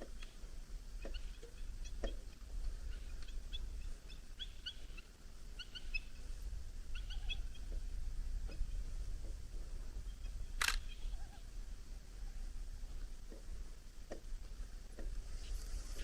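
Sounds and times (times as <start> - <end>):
eagles chirping: 0.0 - 7.9.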